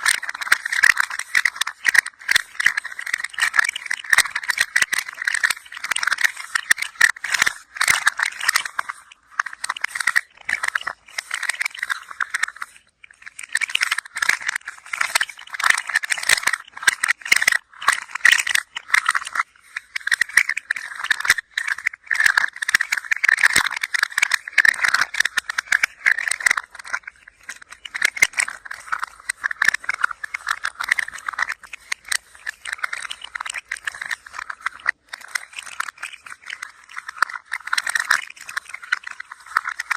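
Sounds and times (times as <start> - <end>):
toy rattling: 0.0 - 39.9.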